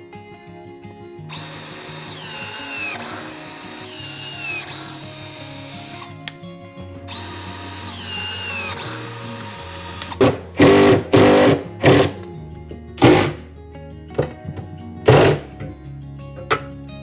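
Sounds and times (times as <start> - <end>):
background music: 0.0 - 17.0
power drill whirring: 1.3 - 6.4, 7.1 - 12.3, 13.0 - 13.4, 15.1 - 15.5.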